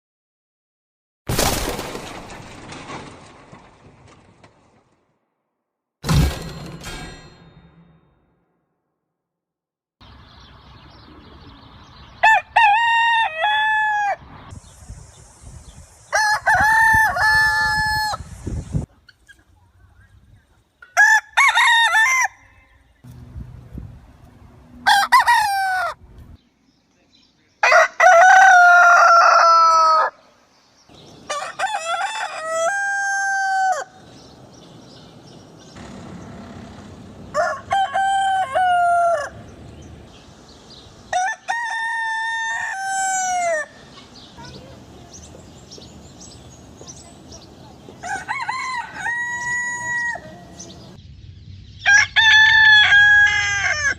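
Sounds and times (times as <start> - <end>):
roosters crowing: 12.2 - 14.3, 16.1 - 18.4, 20.9 - 22.8, 24.8 - 26.0, 27.6 - 30.3, 31.0 - 34.4, 35.6 - 44.0, 47.9 - 51.0, 51.8 - 53.9.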